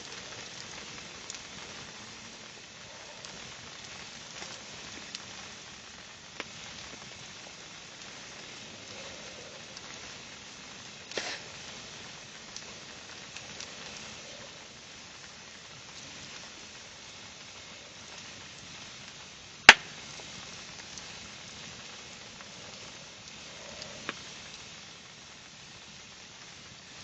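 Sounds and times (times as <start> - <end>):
steady hiss: 0.0 - 27.0
wood fire crackling: 0.0 - 27.0
sharp pop from fire: 11.1 - 11.6, 19.6 - 20.4.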